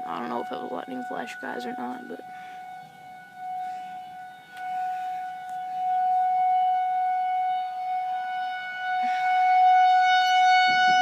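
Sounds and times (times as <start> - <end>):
tornado warning siren steady tone: 0.0 - 11.0.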